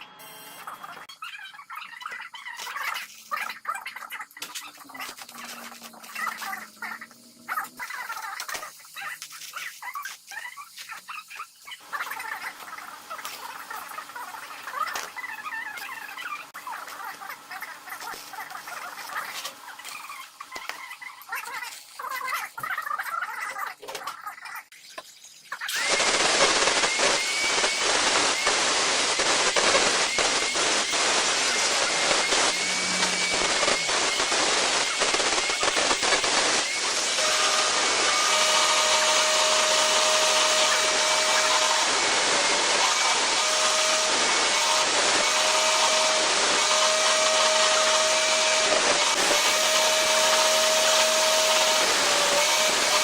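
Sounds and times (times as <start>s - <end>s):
small motor running with clicks: 2.1s - 22.8s, 25.7s - 53.0s
high whine: 25.7s - 53.0s.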